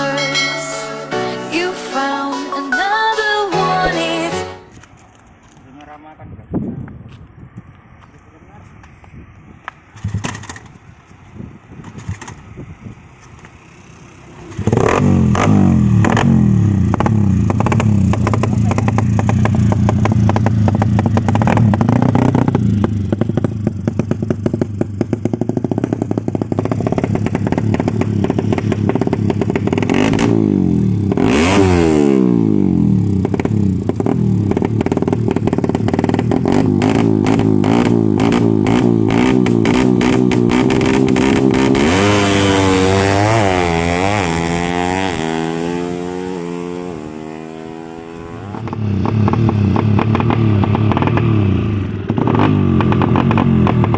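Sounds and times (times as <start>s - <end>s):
motorcycle engine running: 11.4s - 53.9s.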